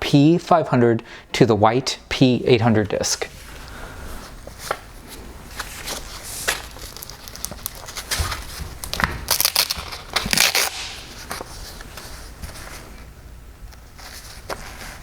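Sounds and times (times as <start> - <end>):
rustling crackling handling noise: 2.9 - 13.1, 13.7 - 15.0
hook-and-loop disc ripping: 5.6 - 12.1.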